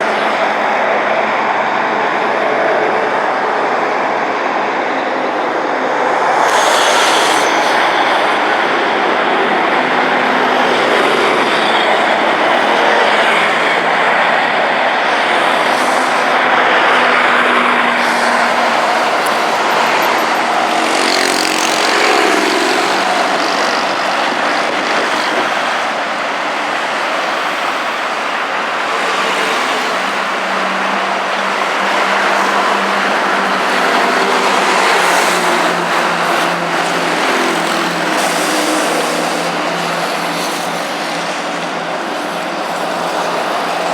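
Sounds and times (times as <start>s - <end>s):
heavy street traffic: 0.0s - 43.9s
engine passing by: 5.0s - 25.9s.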